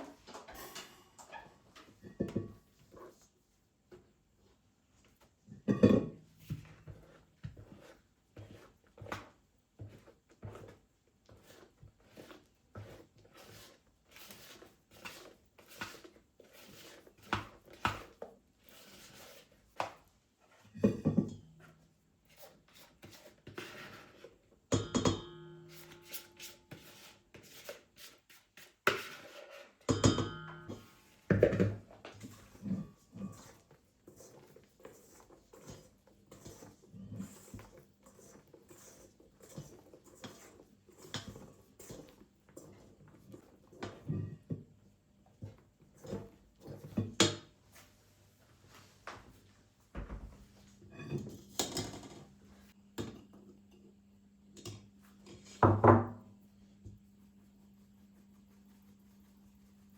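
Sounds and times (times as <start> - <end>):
objects knocking and tapping: 0.0 - 2.9, 29.8 - 33.4, 50.0 - 52.4, 54.6 - 56.3.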